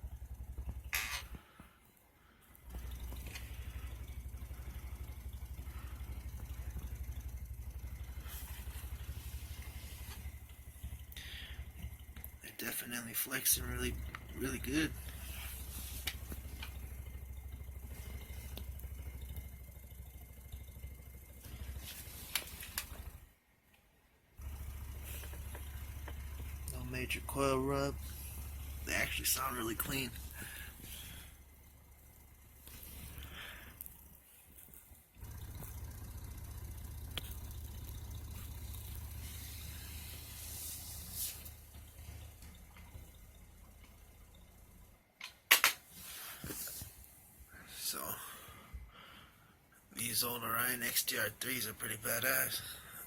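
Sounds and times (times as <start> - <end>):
deep bass tone from subwoofers: 0.0 - 1.4, 2.7 - 12.5, 24.4 - 34.1.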